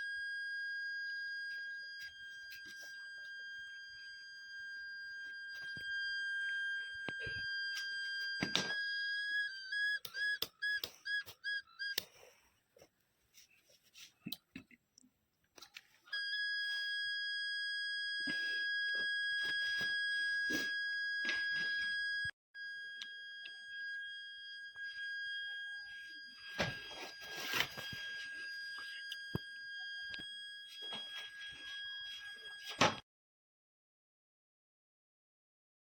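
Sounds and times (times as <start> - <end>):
high-pitched alarm buzzer: 0.0 - 11.1, 16.2 - 33.0.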